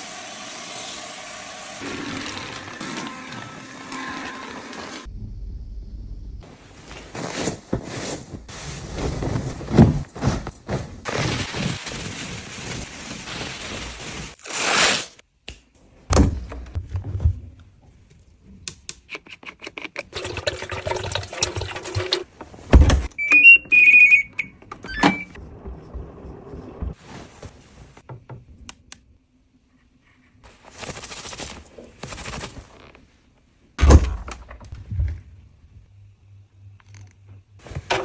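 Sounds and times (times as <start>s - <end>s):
items thudding down: 6.8s - 14.4s.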